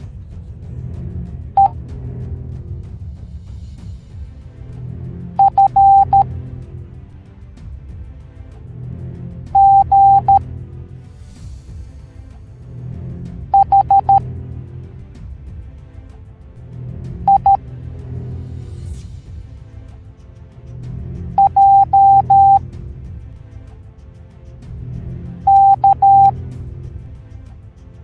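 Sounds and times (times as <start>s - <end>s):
background music with drum beat: 0.0s - 28.0s
morse code beeps: 5.4s - 6.2s, 9.6s - 10.4s, 13.6s - 14.2s, 17.3s - 17.6s, 21.4s - 22.6s, 25.5s - 26.3s.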